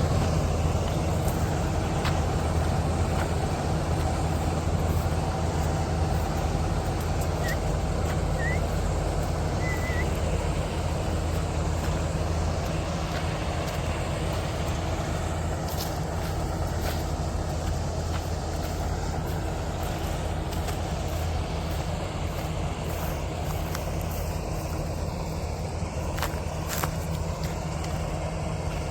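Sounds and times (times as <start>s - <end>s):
combine harvester running: 0.0s - 28.9s.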